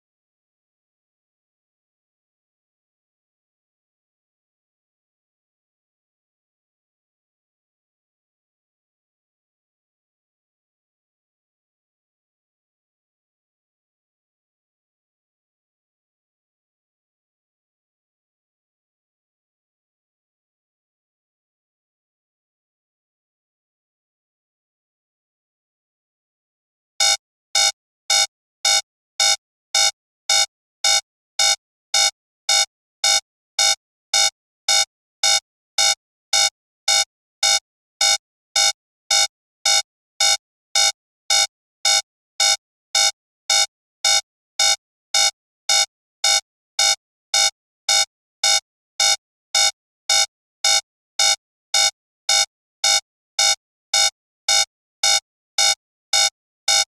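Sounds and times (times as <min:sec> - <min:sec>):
alarm clock beeping: 0:27.0 - 0:56.9.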